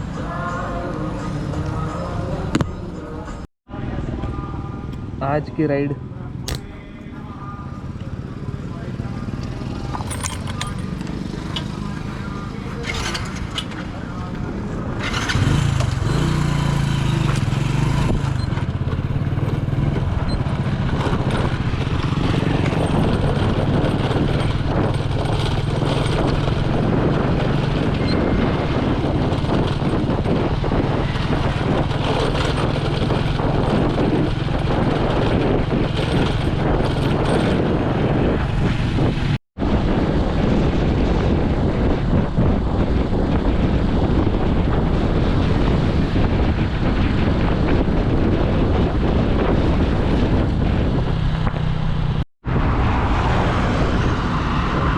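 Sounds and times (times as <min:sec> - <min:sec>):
wind and road noise: 0:00.0 - 0:54.9
vehicle engine running: 0:03.8 - 0:39.1.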